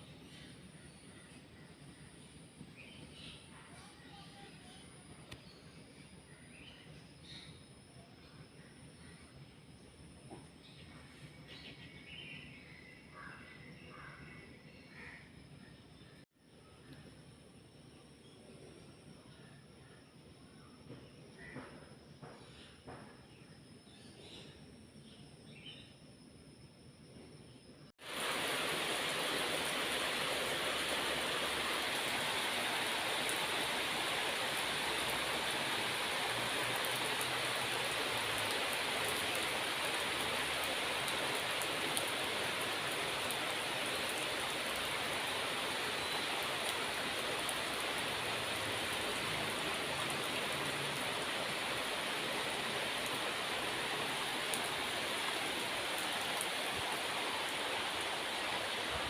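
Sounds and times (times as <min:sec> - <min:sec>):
faint insect calls: 0:00.0 - 0:59.0
steady rain falling: 0:28.0 - 0:59.0.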